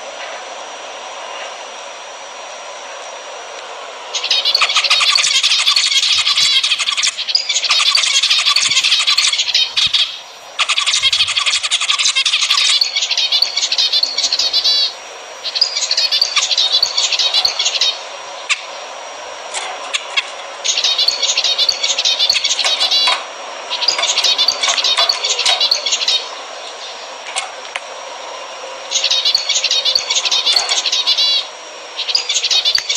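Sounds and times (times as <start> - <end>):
zebra finches singing and calling: 4.2 - 18.7, 20.2 - 27.0, 28.9 - 32.9.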